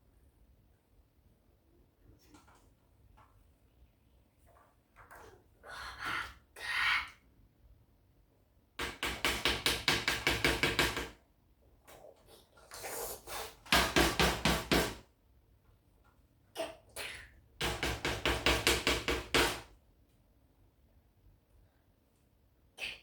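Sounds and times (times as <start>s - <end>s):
rapid knocking: 8.8s - 11.2s.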